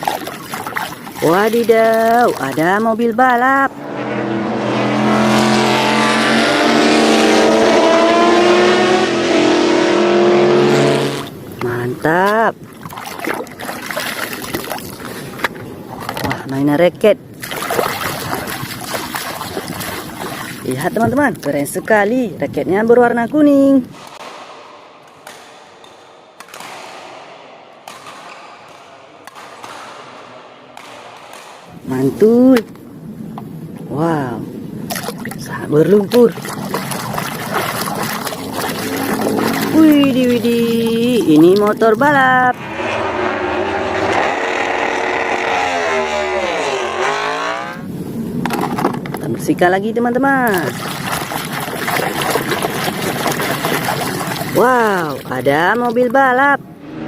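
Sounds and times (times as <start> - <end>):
water sloshing in a basin: 0.0 - 3.7, 10.7 - 24.2, 34.0 - 42.6, 50.2 - 56.5
race car engine drone: 3.6 - 11.5, 42.5 - 49.0, 56.6 - 57.0.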